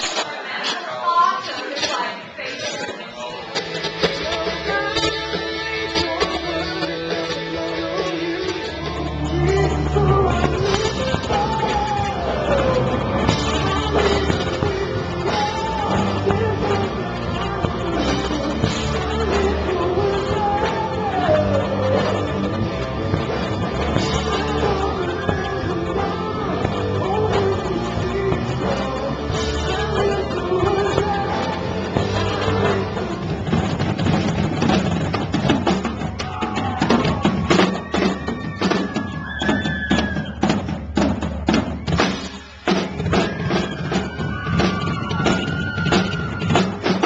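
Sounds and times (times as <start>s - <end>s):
drums: 0.0s - 47.0s
person singing: 3.2s - 23.2s, 23.8s - 34.1s
electric guitar: 3.3s - 39.2s
heavy bass: 3.4s - 47.0s.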